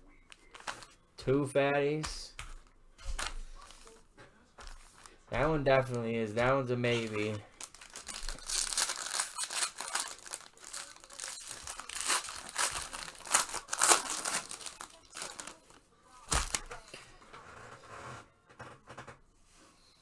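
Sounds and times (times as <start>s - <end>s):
plastic packaging crinkling: 0.1s - 1.0s, 2.3s - 17.0s.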